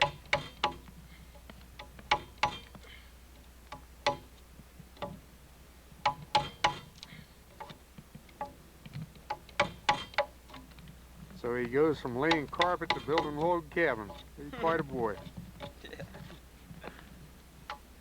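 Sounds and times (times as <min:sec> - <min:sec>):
tool knocking on log: 0:04.0 - 0:04.3, 0:06.0 - 0:07.0, 0:09.3 - 0:10.4, 0:11.6 - 0:16.4.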